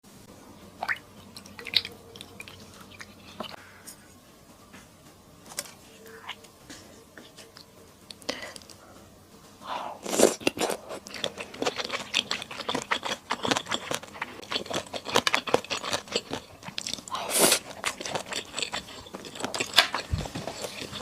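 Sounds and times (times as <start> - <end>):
chewing and crunching food: 0.8 - 3.6, 9.7 - 21.0.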